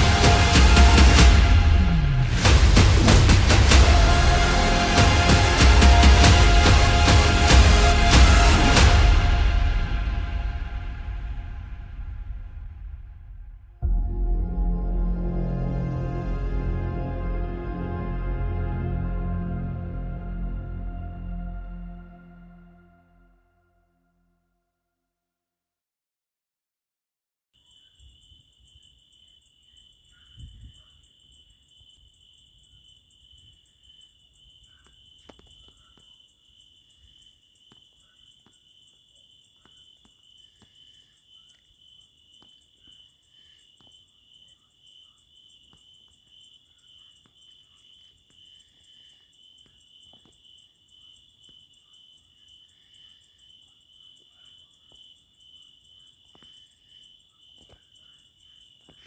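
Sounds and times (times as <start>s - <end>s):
crickets trilling: 27.6s - 59.0s.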